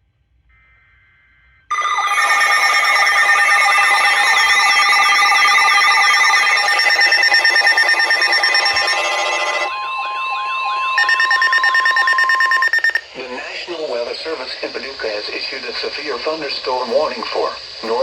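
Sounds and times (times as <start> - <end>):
warbling siren-like tones: 1.7 - 13.0
steady beeps: 1.7 - 13.2, 16.9 - 18.0
weather radio alarm tone: 1.7 - 13.4, 16.9 - 18.0.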